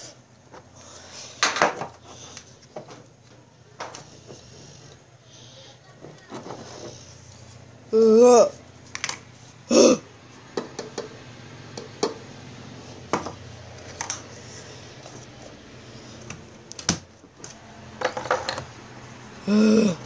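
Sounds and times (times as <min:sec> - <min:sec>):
objects being handled: 0:06.0 - 0:07.6.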